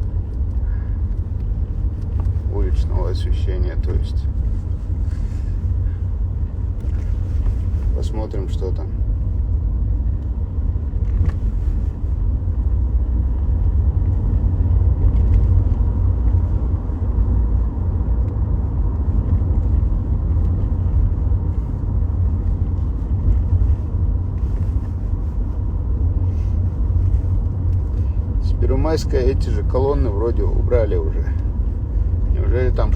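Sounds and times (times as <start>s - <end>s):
car road and engine rumble: 0.0s - 32.9s.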